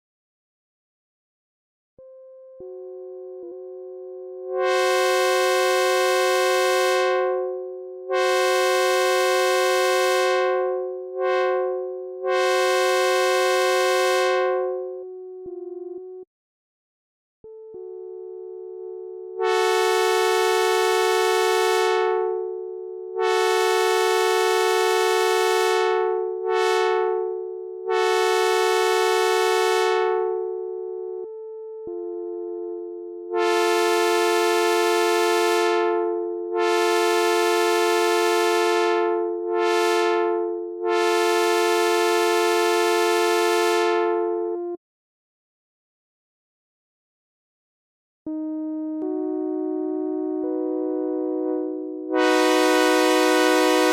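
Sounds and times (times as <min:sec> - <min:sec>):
synthesized train horn chord: 0:04.4 - 0:14.9, 0:19.4 - 0:22.4, 0:23.1 - 0:30.4, 0:33.3 - 0:44.6, 0:48.3 - 0:53.9.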